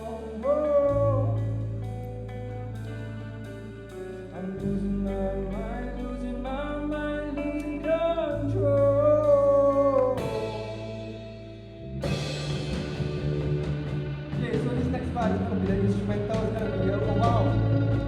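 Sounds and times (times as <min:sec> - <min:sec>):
guitar: 0:00.0 - 0:18.0
steady low notes: 0:00.0 - 0:18.0
sharp hit: 0:12.0 - 0:15.9.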